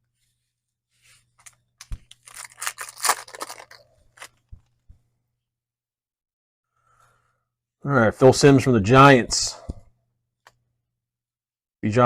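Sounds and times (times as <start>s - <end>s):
foil wrapper tearing: 2.1s - 4.4s.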